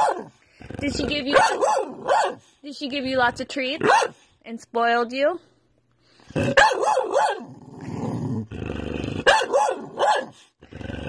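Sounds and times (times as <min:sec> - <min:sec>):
dog growly grumble: 0:00.5 - 0:01.3, 0:06.2 - 0:06.6, 0:07.4 - 0:10.0, 0:10.6 - 0:11.0.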